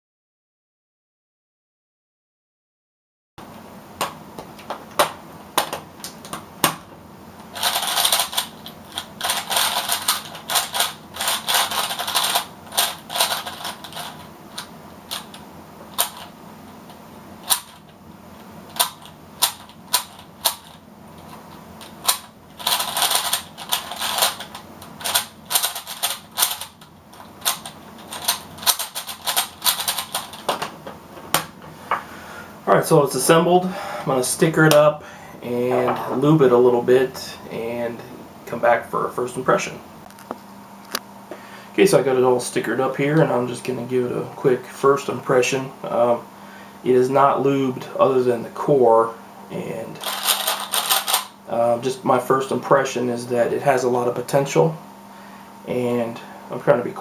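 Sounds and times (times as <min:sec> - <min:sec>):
rapid rattling clicks: 0:07.4 - 0:16.3, 0:17.4 - 0:17.9, 0:18.7 - 0:30.7, 0:50.0 - 0:51.4
plastic puzzle pieces clicking: 0:07.6 - 0:15.4, 0:22.0 - 0:30.7, 0:50.0 - 0:51.3.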